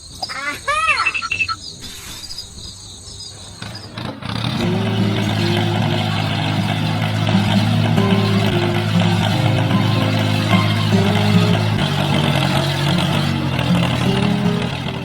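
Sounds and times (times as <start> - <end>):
motor humming: 3.9 - 15.0.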